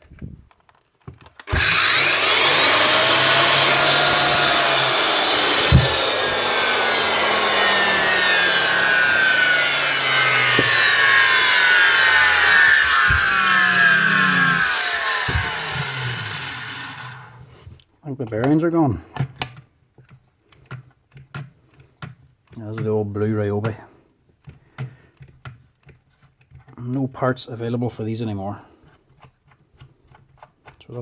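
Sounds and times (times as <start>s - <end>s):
electric router running roughly: 1.5s - 17.5s.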